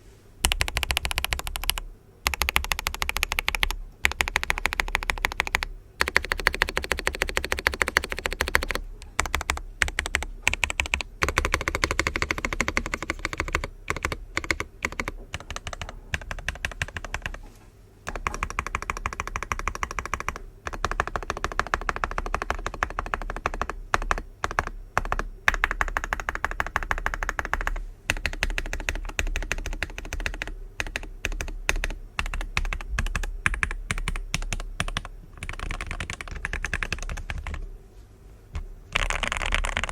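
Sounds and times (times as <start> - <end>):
mechanical keyboard keys clacking: 0.4 - 17.4, 18.1 - 37.6, 38.9 - 39.9.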